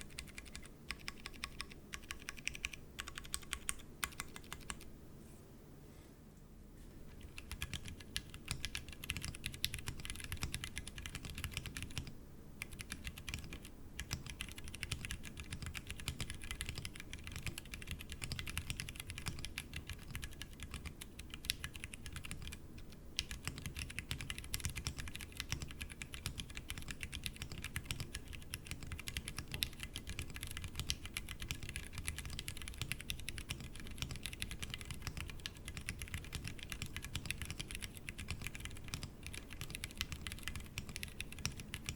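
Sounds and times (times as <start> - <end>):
fast mechanical keyboard typing: 0.0 - 4.9, 7.2 - 41.9.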